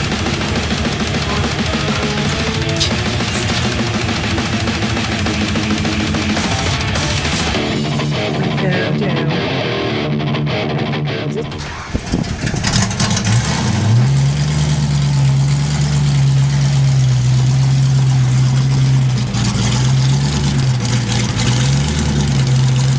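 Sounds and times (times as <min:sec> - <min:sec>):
music: 0:00.0 - 0:11.7
car engine starting and idling: 0:00.0 - 0:22.9.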